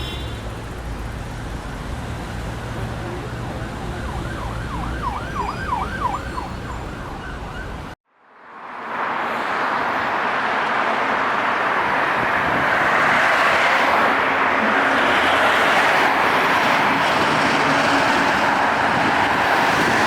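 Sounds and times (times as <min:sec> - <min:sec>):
street traffic rumble: 0:00.0 - 0:20.0
siren yelping: 0:03.1 - 0:08.0.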